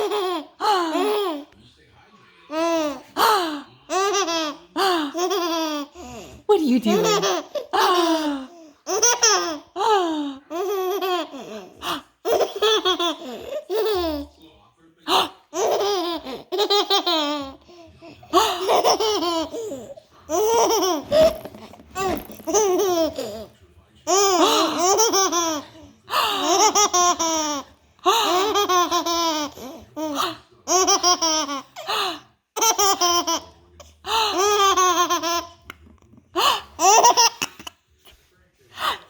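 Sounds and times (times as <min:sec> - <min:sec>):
baby girl giggling: 0:03.9 - 0:14.3, 0:15.5 - 0:23.5.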